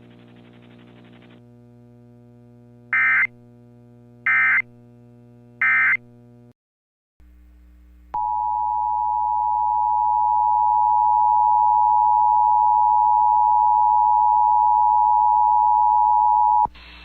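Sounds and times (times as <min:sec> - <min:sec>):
faint mains hum: 0:07.2 - 0:17.0.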